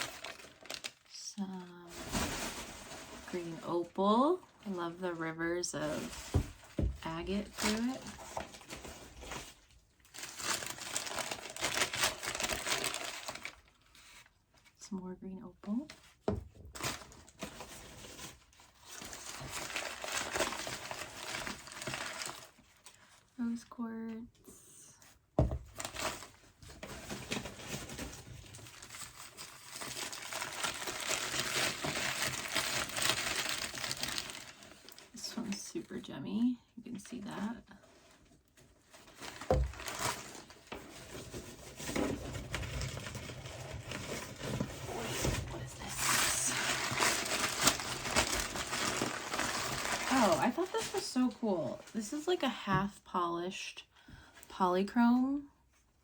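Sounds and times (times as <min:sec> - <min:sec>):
packing wrap crinkling and tearing: 0:00.0 - 0:03.8, 0:05.9 - 0:14.8, 0:16.0 - 0:23.2, 0:25.7 - 0:35.6, 0:38.5 - 0:52.3.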